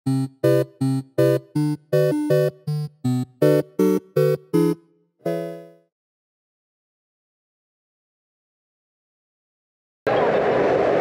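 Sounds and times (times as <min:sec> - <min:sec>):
clipped synth chords: 0:00.0 - 0:05.8.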